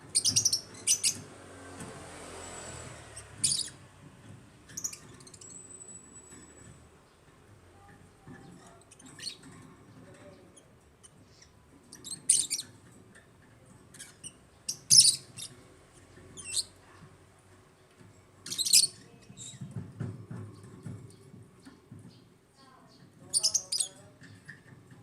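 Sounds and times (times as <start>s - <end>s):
lovebirds chirping: 0.0s - 1.3s, 3.0s - 3.8s, 4.7s - 6.1s, 10.4s - 12.8s, 13.9s - 16.9s, 18.4s - 19.7s, 20.6s - 24.8s.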